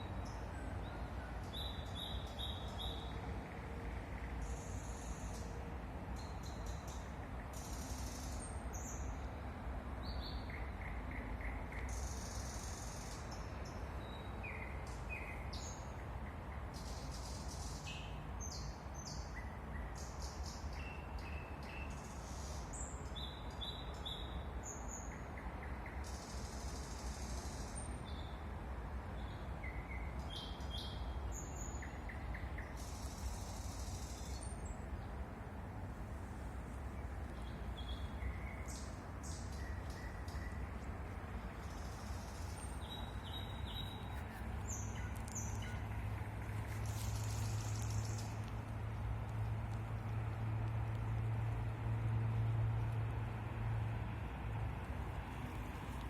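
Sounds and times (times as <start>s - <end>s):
low city rumble: 0.0s - 56.0s
songbirds chirping and whistling: 36.4s - 48.4s.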